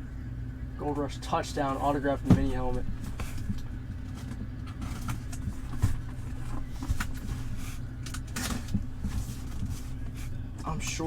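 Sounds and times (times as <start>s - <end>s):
steady low hum: 0.0s - 11.0s
cardboard box being handled: 2.2s - 10.4s.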